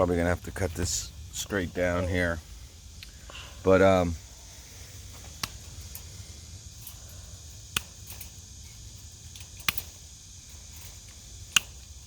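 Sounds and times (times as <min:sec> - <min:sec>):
wire cutters snapping wire: 0:05.3 - 0:06.1, 0:06.7 - 0:12.0.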